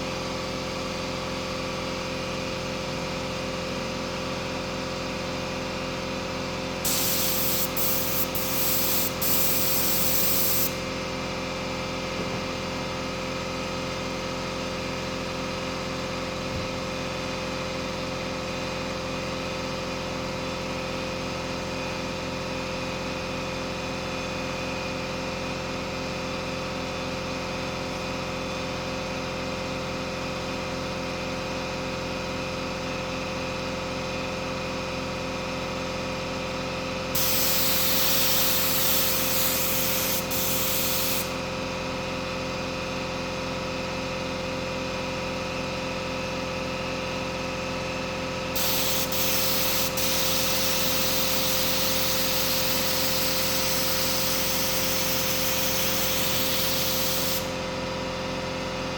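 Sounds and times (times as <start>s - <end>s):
hiss of spraying air: 6.8s - 10.8s, 37.2s - 41.4s, 48.6s - 57.6s.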